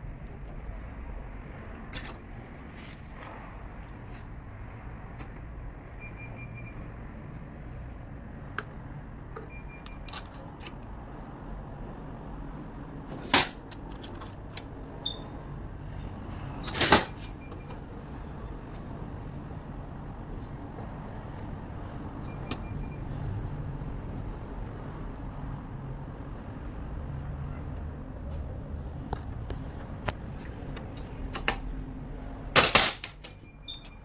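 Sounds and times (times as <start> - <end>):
metal tools clicking and clinking: 1.9 - 3.0, 9.4 - 10.9, 13.1 - 14.8, 16.6 - 17.8, 32.6 - 34.0.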